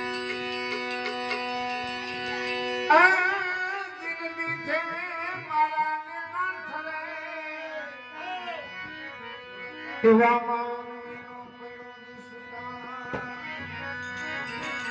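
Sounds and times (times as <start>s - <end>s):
held drone: 0.0s - 3.9s, 12.3s - 14.9s.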